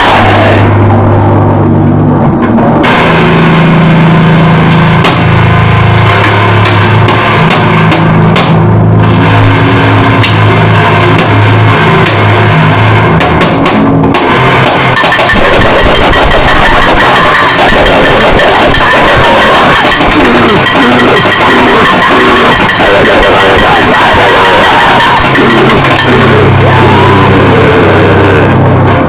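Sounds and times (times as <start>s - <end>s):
harsh noise music: 0.0s - 29.0s.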